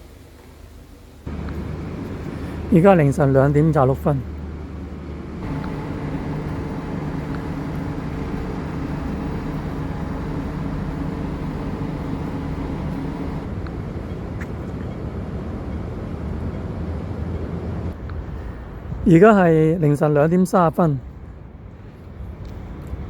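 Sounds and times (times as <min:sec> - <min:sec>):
steady motor hum: 0:01.2 - 0:18.0
low rumble: 0:04.2 - 0:14.4.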